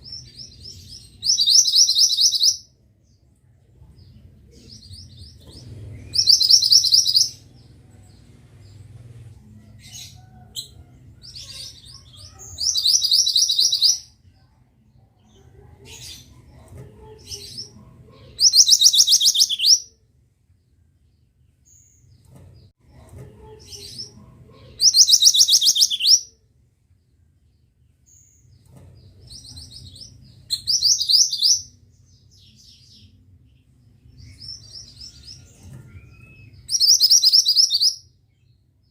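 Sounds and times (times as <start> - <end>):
faint bird chirps: 0.0 - 14.1, 17.3 - 20.0, 23.7 - 26.4, 34.1 - 38.9.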